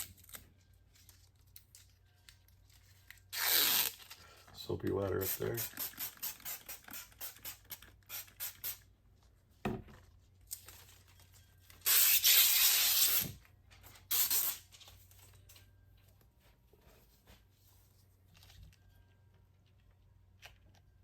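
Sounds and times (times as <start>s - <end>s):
spray bottle squirting on glass: 3.3s - 4.0s, 5.2s - 8.8s, 11.8s - 13.4s, 14.1s - 14.7s.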